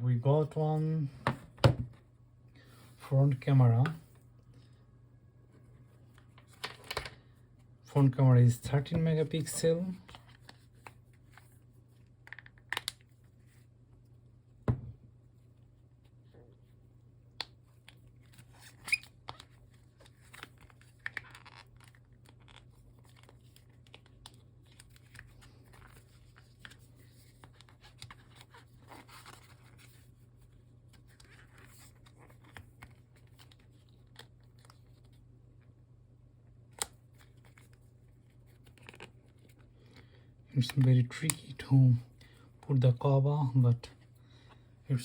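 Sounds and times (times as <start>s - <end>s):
plastic crinkling and rustling: 17.6s - 35.3s.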